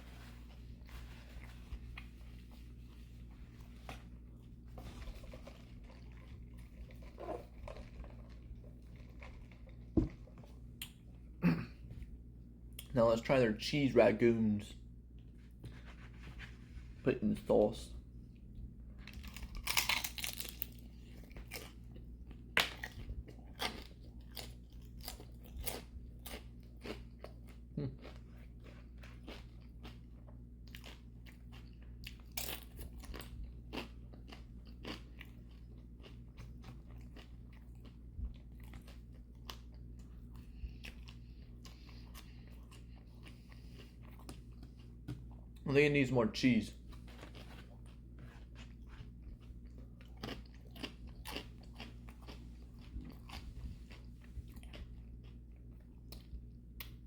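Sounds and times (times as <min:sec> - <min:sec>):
crunching and chewing food: 0:00.0 - 0:57.0
faint low hum: 0:00.0 - 0:57.0.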